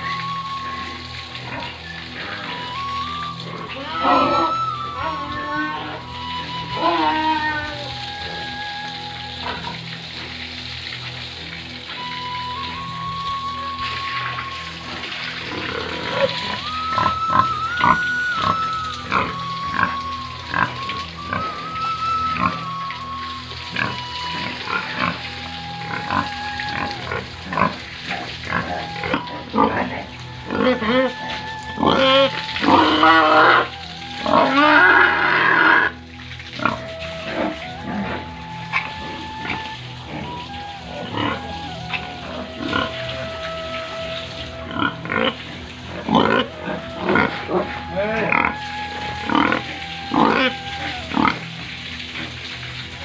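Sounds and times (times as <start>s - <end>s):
pigs grunting: 1.4s - 8.4s, 14.8s - 22.8s, 23.7s - 36.0s, 36.6s - 43.2s, 44.6s - 51.4s.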